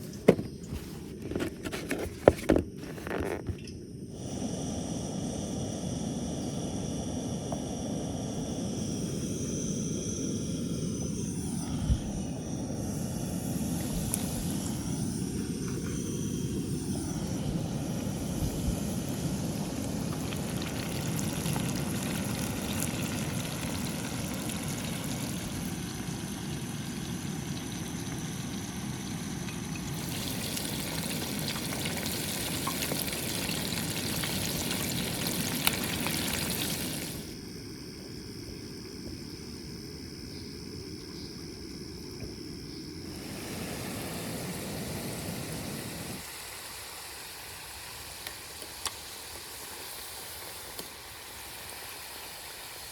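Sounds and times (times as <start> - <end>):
food sizzling in hot oil: 16.0 - 37.4, 43.0 - 52.9.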